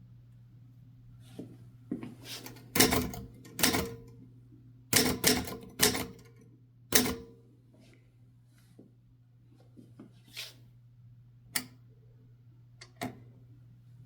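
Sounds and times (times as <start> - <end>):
typewriter key strikes: 5.0 - 6.3.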